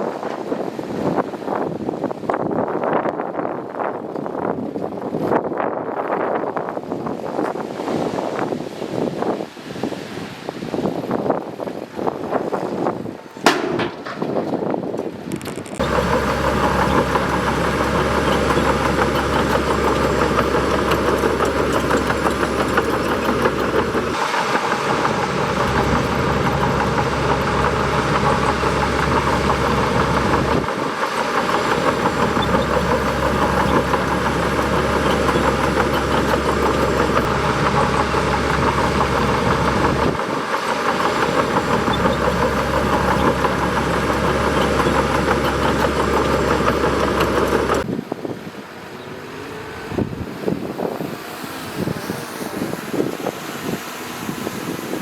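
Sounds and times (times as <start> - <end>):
bulldozer diesel engine running: 13.5 - 47.9.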